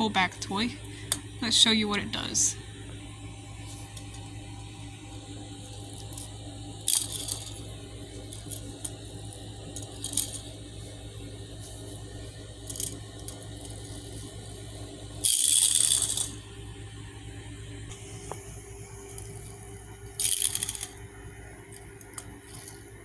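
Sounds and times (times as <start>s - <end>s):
toy gear motor rattling: 5.7s - 10.6s, 11.6s - 16.4s, 19.0s - 23.0s.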